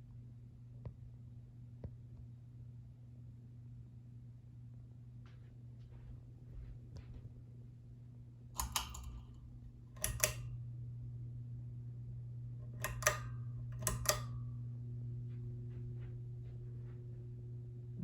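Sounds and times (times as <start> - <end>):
ceiling fan humming: 0.0 - 18.0
fan pull-chain switch clicking: 8.6 - 10.6, 12.6 - 14.5.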